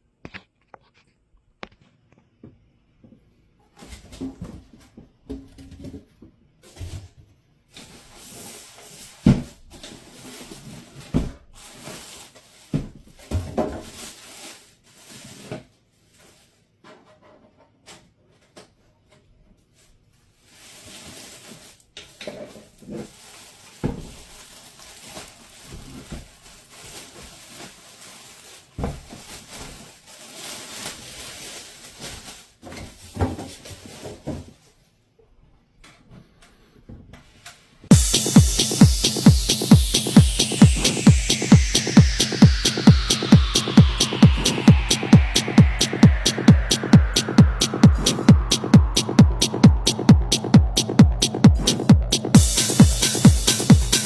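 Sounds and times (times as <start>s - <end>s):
packaging rustling and scraping: 7.8s - 16.6s, 19.8s - 34.6s.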